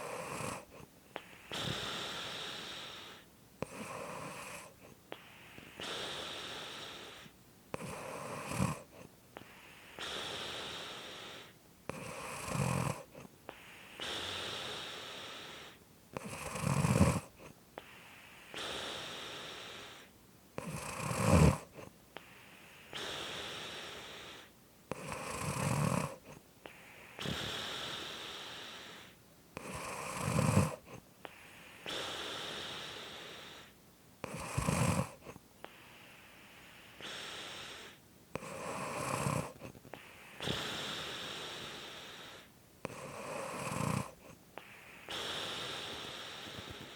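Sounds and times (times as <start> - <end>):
person snoring: 0.0 - 35.8, 36.6 - 46.9.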